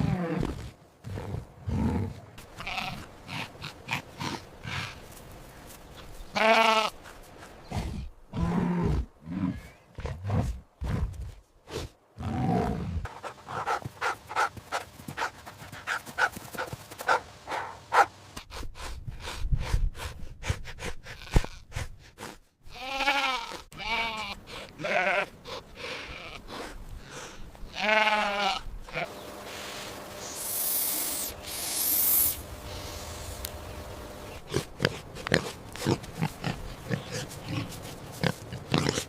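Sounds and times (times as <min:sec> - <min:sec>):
sheep bleating: 0:02.6 - 0:03.4, 0:06.3 - 0:07.0, 0:22.7 - 0:25.3, 0:27.7 - 0:29.1.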